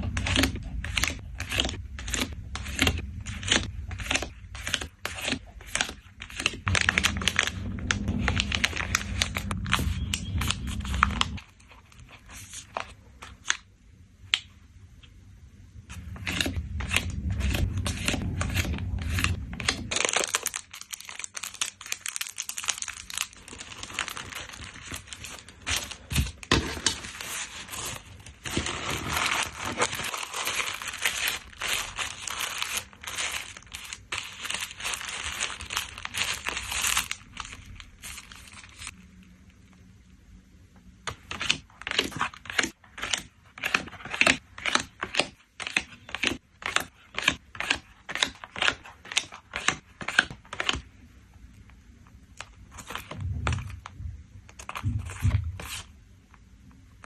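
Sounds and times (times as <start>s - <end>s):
plastic tearing: 0.0s - 11.6s, 16.0s - 39.0s
plastic packaging crinkling: 0.0s - 13.6s, 16.0s - 39.0s.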